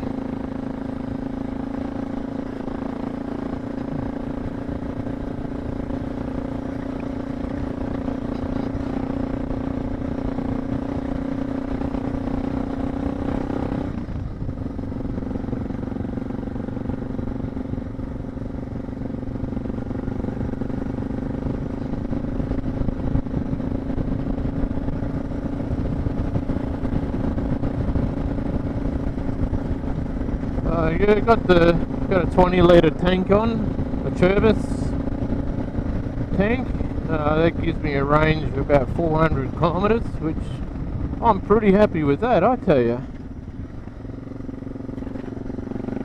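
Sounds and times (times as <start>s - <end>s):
motorcycle engine pulling under load: 44.0s - 46.0s.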